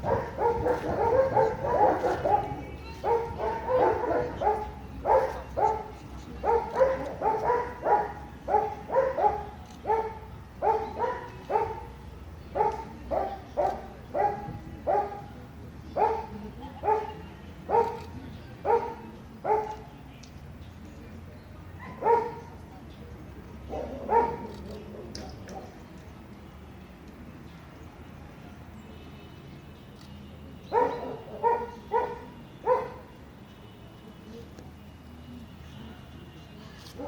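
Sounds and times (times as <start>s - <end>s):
dog barking: 0.0s - 11.9s, 12.6s - 15.2s, 16.0s - 17.1s, 17.7s - 18.1s, 18.7s - 19.8s, 21.8s - 22.5s, 23.7s - 24.6s, 30.7s - 33.1s.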